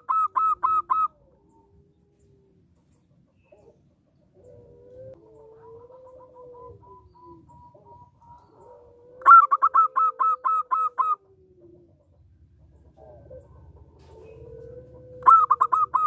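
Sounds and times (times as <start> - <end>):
dove cooing: 0.0 - 2.6, 3.3 - 16.0.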